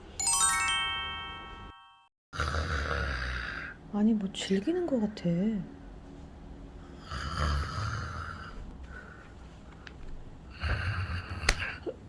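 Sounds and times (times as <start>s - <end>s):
man snoring: 2.4s - 3.8s, 7.0s - 8.6s, 10.5s - 11.8s.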